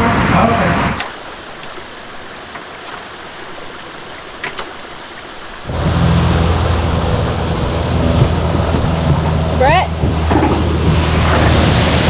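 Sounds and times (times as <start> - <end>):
faint drips: 1.0 - 5.7
water trickling through a pipe: 1.0 - 5.8
loud low rumble: 5.7 - 12.0.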